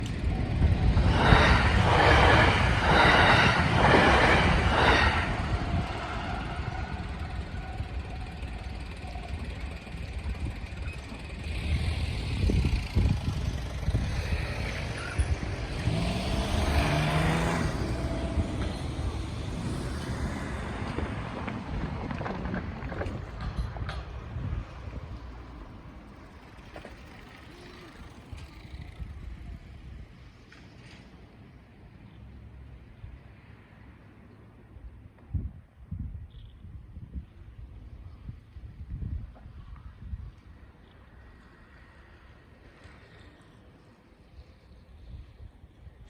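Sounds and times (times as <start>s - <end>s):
vehicle passing: 0.0s - 8.5s, 11.4s - 22.8s
road traffic rumble: 0.0s - 35.4s.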